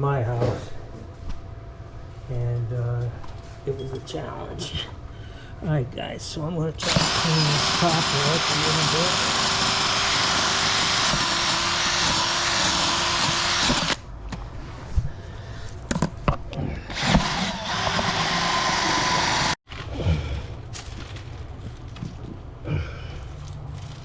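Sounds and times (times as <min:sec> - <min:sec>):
power drill whining: 0:06.8 - 0:14.0, 0:16.9 - 0:19.6.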